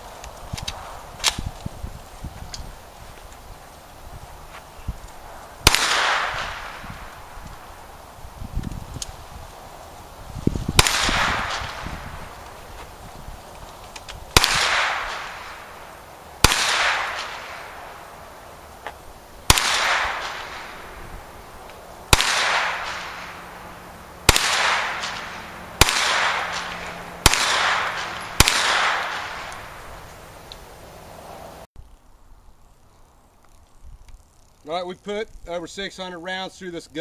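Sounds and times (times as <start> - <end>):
gunshots with echo: 5.6 - 6.9, 10.8 - 12.3, 14.4 - 15.8, 16.4 - 18.1, 19.5 - 21.0, 22.1 - 29.9.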